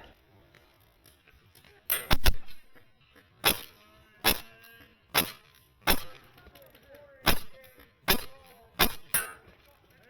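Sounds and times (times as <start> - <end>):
airsoft rifle shots: 1.9 - 2.8, 3.4 - 6.4, 7.2 - 9.4.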